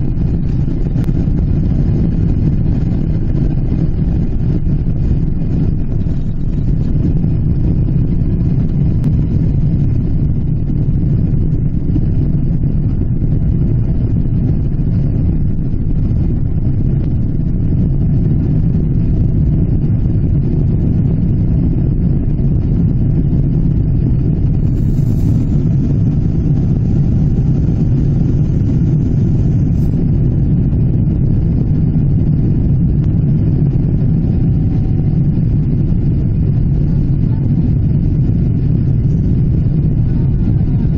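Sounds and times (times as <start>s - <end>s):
airplane cabin engine noise: 0.0s - 40.9s.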